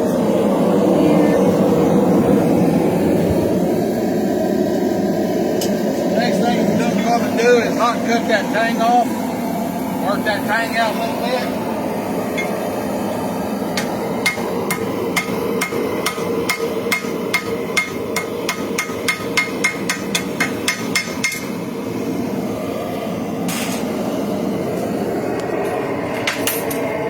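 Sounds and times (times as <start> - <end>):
steady background noise: 0.0 - 27.0
hammer striking steel on anvil: 13.8 - 21.6.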